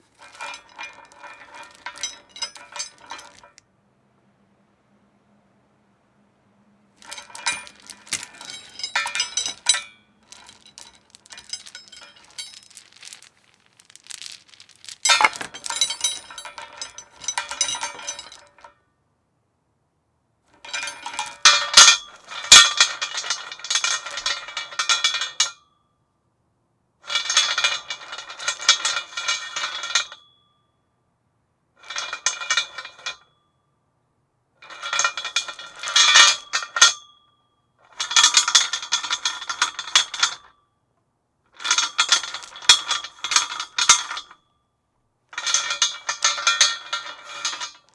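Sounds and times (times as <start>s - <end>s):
chain rattling against metal post: 0.2s - 3.6s, 7.0s - 18.5s.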